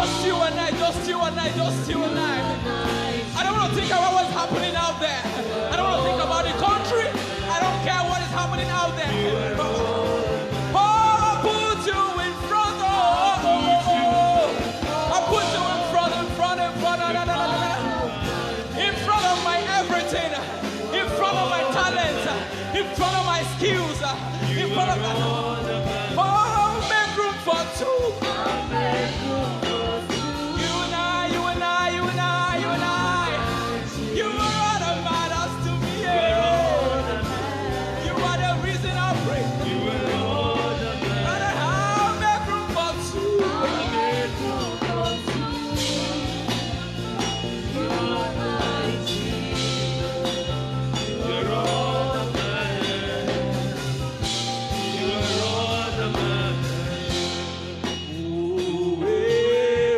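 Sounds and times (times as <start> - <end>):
sustained bass line: 0.0 - 59.9.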